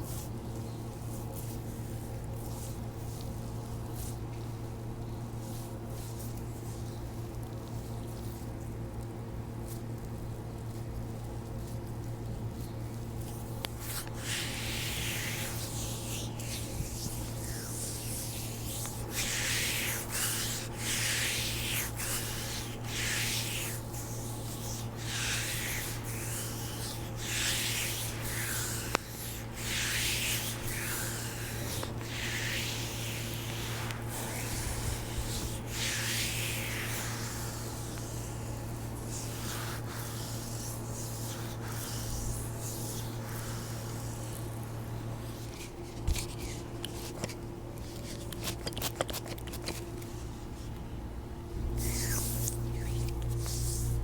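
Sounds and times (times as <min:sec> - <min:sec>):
low electrical hum: 0:00.0 - 0:54.0
hands rubbing skin: 0:11.5 - 0:50.8, 0:51.7 - 0:54.0.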